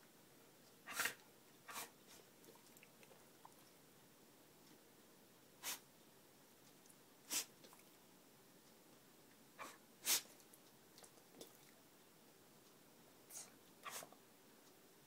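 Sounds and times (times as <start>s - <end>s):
dog sneezing: 0.9s - 2.0s, 5.6s - 5.9s, 7.3s - 7.5s, 9.6s - 10.3s, 13.3s - 14.2s.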